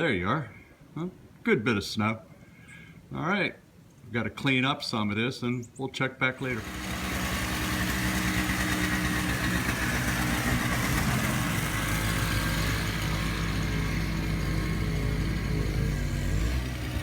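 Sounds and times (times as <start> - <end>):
snowblower engine running: 6.4 - 17.0.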